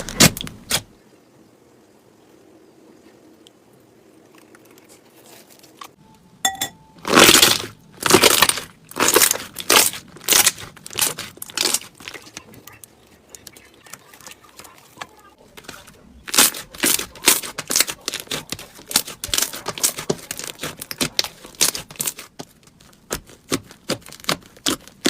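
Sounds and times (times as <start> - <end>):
slime squishing: 7.0 - 25.0.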